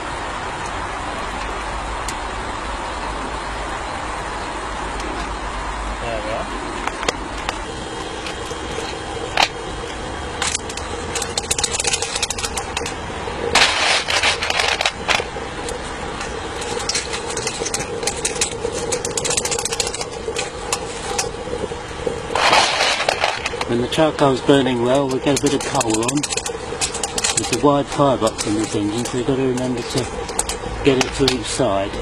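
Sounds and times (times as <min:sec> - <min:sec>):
electric fan running: 0:00.0 - 0:32.0
metallic clicks and clatter: 0:08.2 - 0:23.8, 0:24.8 - 0:31.6.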